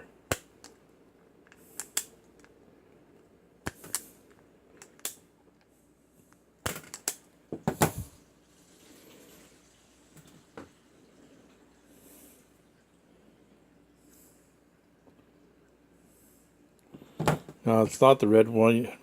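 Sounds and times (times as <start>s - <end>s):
wire stripper pliers clicking: 4.8s - 5.2s.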